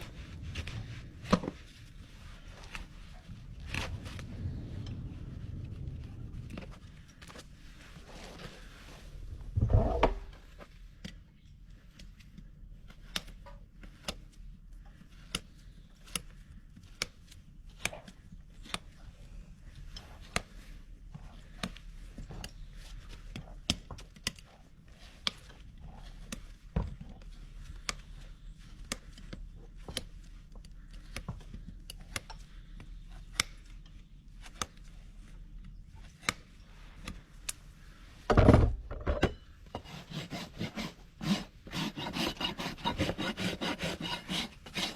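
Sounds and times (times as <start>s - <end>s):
hoof tools clicking and snipping: 28.8s - 34.9s.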